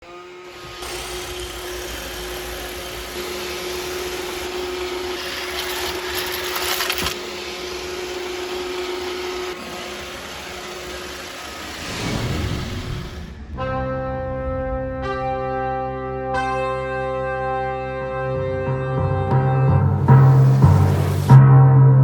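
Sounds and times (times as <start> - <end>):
robot vacuum whirring: 0.1 - 12.4.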